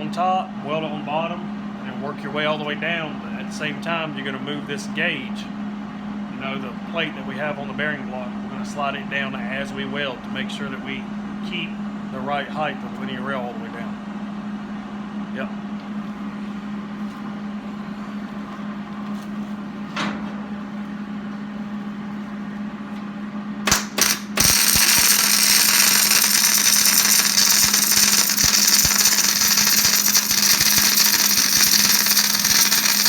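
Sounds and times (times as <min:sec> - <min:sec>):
arc welding: 0:23.6 - 0:33.0.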